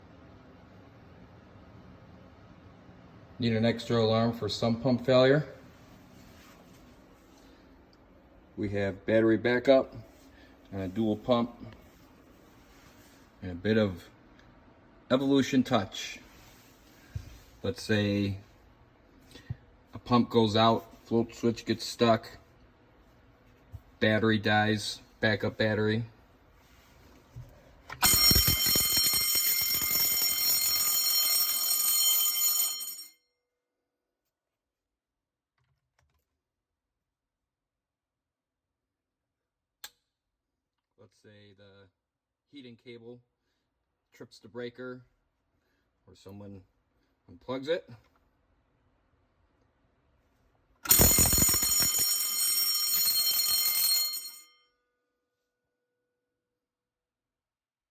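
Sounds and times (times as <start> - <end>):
shrill alarm tone: 28.0 - 33.1, 50.9 - 54.4.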